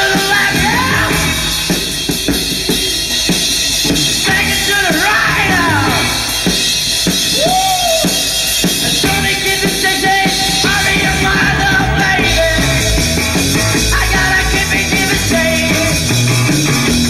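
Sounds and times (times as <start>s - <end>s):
driving drum kit: 0.0s - 17.0s
rock and roll band playing: 0.0s - 17.0s
shouted vocal: 7.4s - 8.3s.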